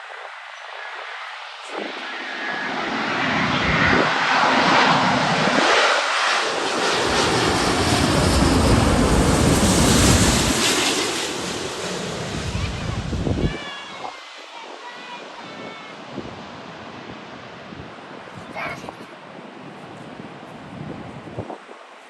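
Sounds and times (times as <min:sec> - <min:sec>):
jet engines on landing approach: 0:00.0 - 0:22.0.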